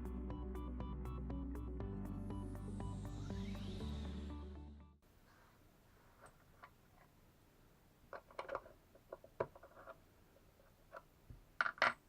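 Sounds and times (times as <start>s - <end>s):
light clicks and scrapes: 8.2s - 11.1s.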